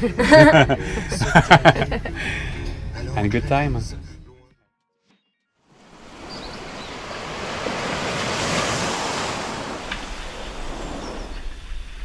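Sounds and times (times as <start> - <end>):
sea waves washing: 5.8 - 12.0
wind rumbling on microphone: 5.8 - 12.0.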